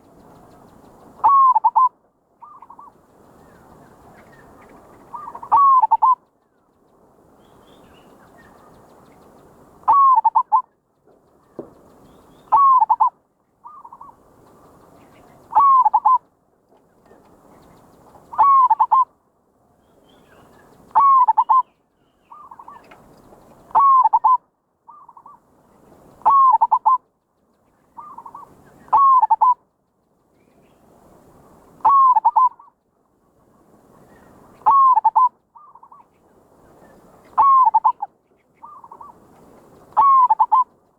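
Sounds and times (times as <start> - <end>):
faint hiss: 0.0 - 23.8, 24.4 - 40.9
dove cooing: 1.2 - 2.9, 5.1 - 6.2, 9.9 - 10.6, 12.5 - 14.2, 15.5 - 16.2, 18.3 - 19.1, 21.0 - 21.6, 23.7 - 25.4, 26.2 - 27.0, 28.0 - 29.6, 31.8 - 32.6, 34.6 - 36.0, 37.4 - 39.2, 39.9 - 40.7.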